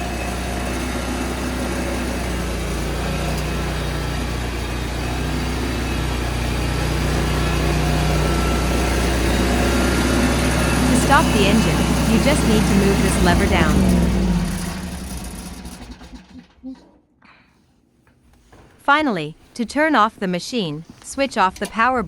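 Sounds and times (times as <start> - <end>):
small gasoline engine running: 0.0 - 16.6.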